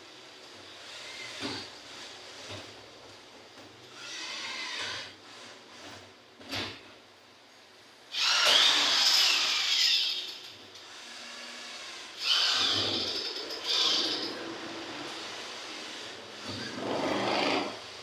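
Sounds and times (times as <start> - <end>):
electric rivet gun whining: 8.1 - 10.6, 12.2 - 14.4.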